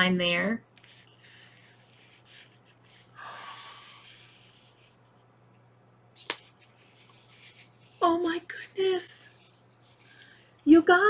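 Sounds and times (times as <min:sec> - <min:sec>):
soft rubbing of plastic case: 0:00.8 - 0:05.2, 0:06.5 - 0:10.7.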